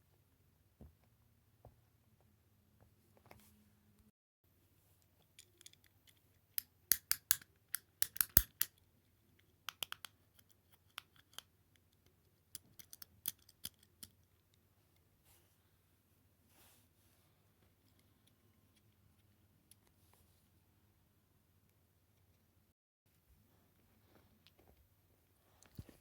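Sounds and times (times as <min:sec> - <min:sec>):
fidget toys clicking: 0:06.6 - 0:08.7.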